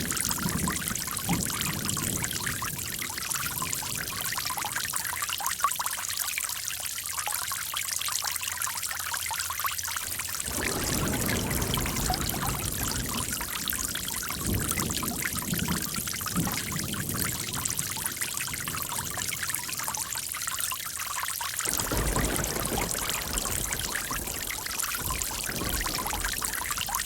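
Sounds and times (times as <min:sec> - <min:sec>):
running water splashing: 0:09.8 - 0:27.0.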